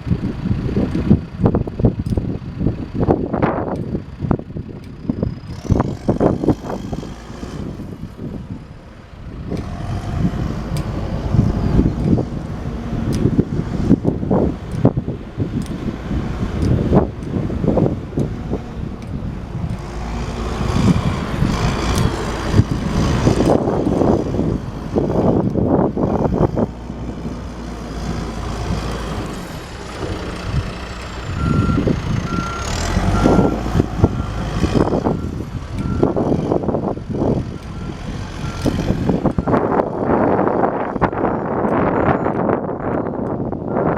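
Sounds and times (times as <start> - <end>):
diesel engine running: 0.0 - 43.9
backup alarm beeping: 31.2 - 36.2.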